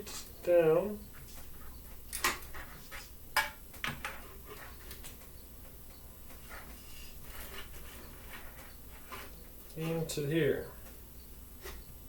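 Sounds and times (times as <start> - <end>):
frame parts clicking and knocking: 2.1 - 10.0.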